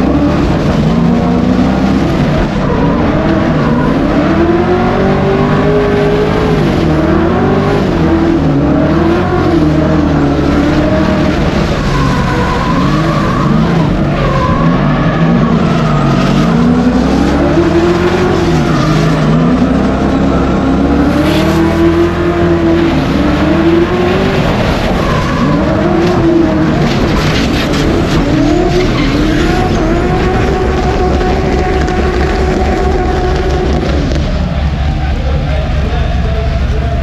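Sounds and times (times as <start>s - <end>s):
car engine revving hard: 0.0s - 37.0s
tyre screech: 24.8s - 35.4s.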